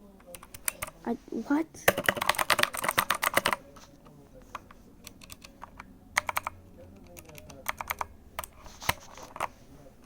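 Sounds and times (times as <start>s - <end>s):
mechanical keyboard clacking: 0.2s - 1.0s, 1.9s - 3.6s, 4.5s - 9.5s.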